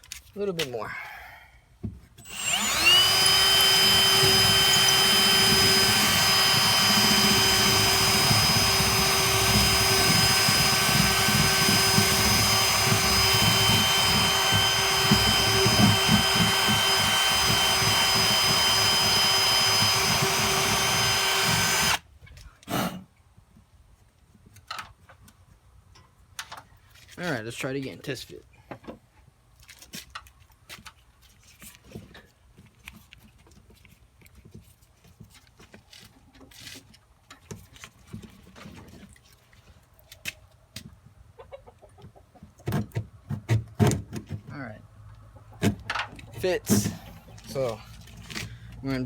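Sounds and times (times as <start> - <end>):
electric drill running: 2.2 - 22.0.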